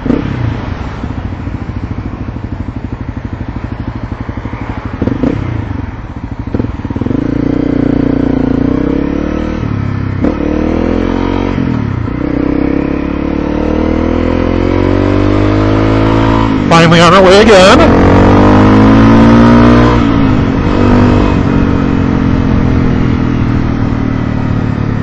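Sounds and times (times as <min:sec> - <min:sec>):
motorcycle pulling away revving: 0:00.0 - 0:25.0
motorcycle engine idling: 0:01.1 - 0:07.5.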